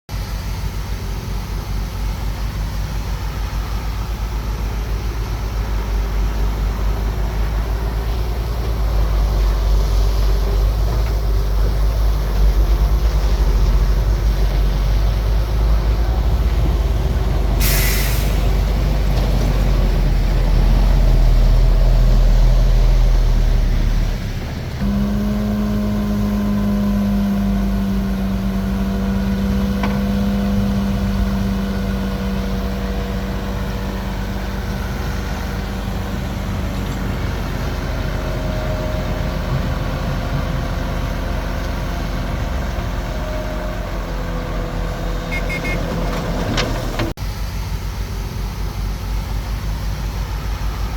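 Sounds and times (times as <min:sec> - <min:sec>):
diesel machinery rumbling: 0:00.1 - 0:50.9
sharp air hiss: 0:17.6 - 0:18.7.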